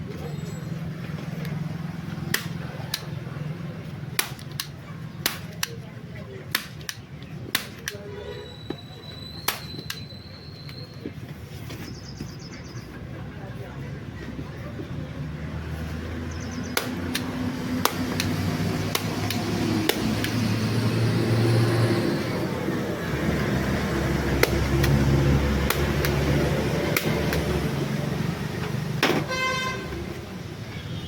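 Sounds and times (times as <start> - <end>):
sharp taps and clicks: 4.1 - 5.9, 6.5 - 8.0, 16.5 - 20.7, 24.4 - 27.6
engine running: 16.8 - 29.0
horn toot: 29.2 - 30.0.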